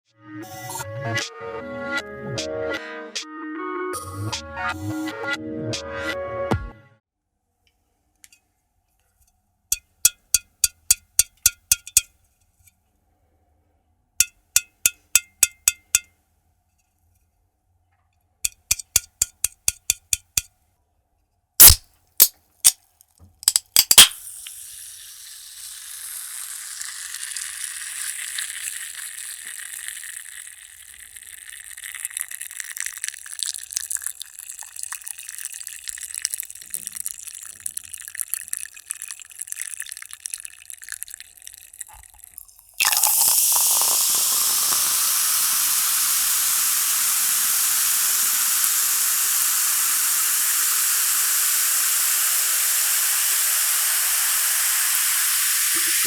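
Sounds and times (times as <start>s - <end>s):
cola fizzing: 10.1s - 12.1s, 18.5s - 20.5s, 21.6s - 22.8s, 23.4s - 56.0s
gas hissing: 21.6s - 22.3s, 23.4s - 29.1s, 42.8s - 56.0s
sharp clicks: 23.4s - 24.5s.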